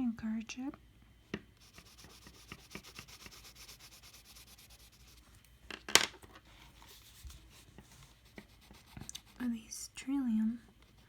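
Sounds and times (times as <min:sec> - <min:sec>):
pencil scratching on paper: 0:01.6 - 0:05.2, 0:06.9 - 0:09.6.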